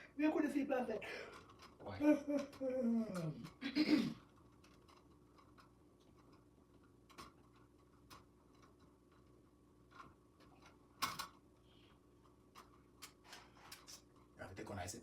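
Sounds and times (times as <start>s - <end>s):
faint steady hum: 0.0s - 15.0s
small clicks and taps: 4.2s - 11.6s, 12.2s - 14.3s.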